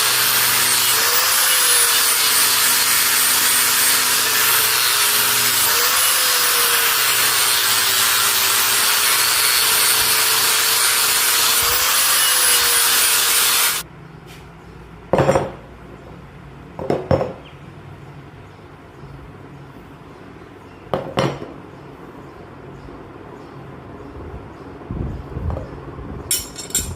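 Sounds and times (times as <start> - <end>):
power tool grinding metal: 0.0 - 13.8
metal clanks: 26.3 - 26.9.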